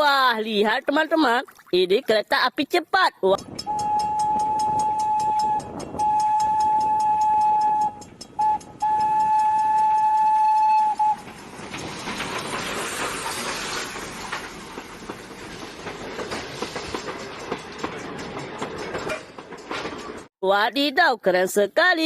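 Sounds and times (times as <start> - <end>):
toy train clickety-clack noise: 3.4 - 13.3
toy train horn tone: 3.6 - 11.2.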